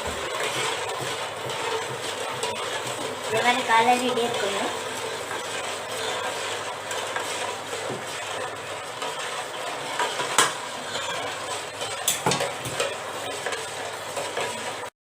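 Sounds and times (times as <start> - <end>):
boiling syrup hissing: 0.0 - 14.9
spoon scraping a pan: 0.0 - 14.9
spoon knocking on pan: 9.9 - 11.2, 12.0 - 13.0.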